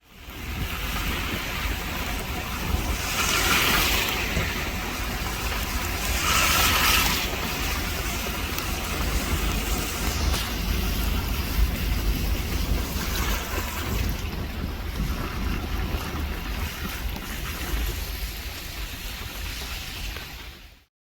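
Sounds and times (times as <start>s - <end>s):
wind rumbling on microphone: 0.0s - 20.8s
steady rushing hiss: 0.1s - 20.8s.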